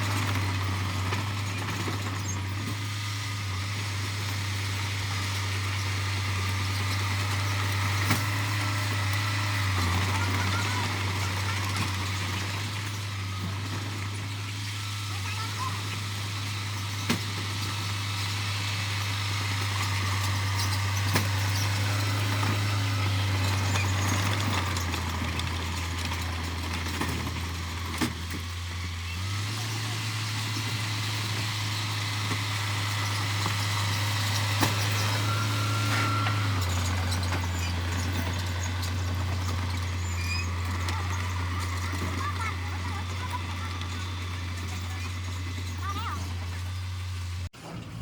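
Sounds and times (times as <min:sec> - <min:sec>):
diesel engine droning: 0:00.0 - 0:48.0.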